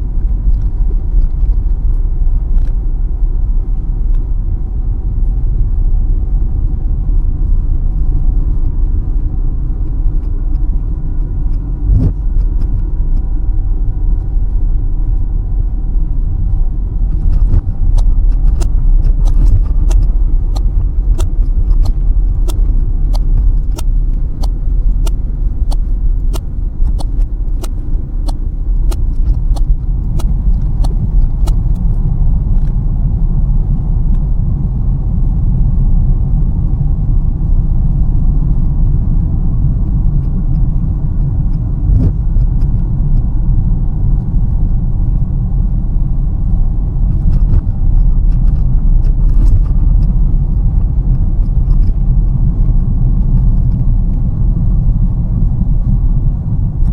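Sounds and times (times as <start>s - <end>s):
car engine and tyres rumble: 0.0s - 56.9s
regular light clicking: 17.9s - 32.8s.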